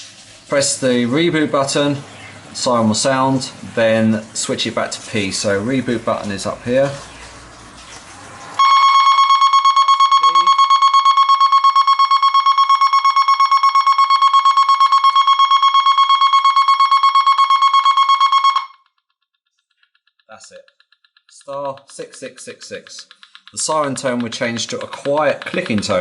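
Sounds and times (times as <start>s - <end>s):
alarm siren pulsing: 8.6s - 18.9s.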